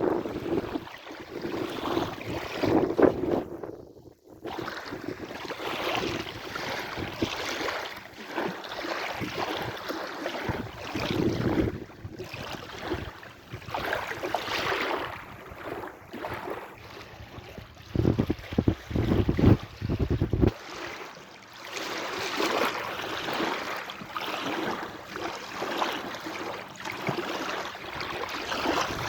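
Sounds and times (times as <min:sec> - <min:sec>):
wind rumbling on microphone: 0:00.0 - 0:07.6, 0:10.4 - 0:20.6, 0:27.9 - 0:29.0
sea waves washing in: 0:04.4 - 0:29.0.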